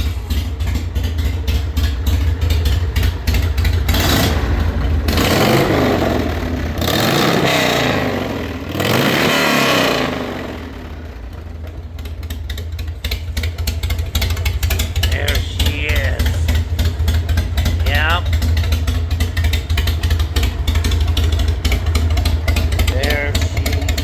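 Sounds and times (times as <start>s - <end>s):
motorcycle engine idling and revving: 0.0s - 24.0s.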